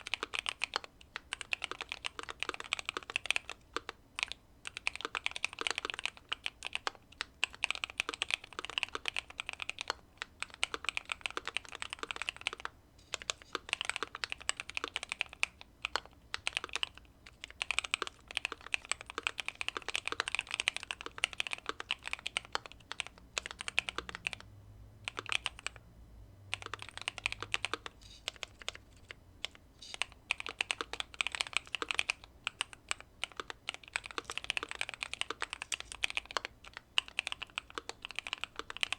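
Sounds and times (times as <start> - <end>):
mechanical keyboard typing: 0.0 - 25.8, 26.5 - 38.9.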